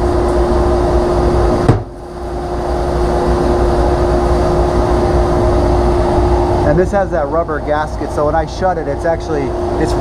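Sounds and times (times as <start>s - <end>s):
dust collector humming: 0.0s - 10.0s
cabinet door slamming shut: 1.6s - 1.9s.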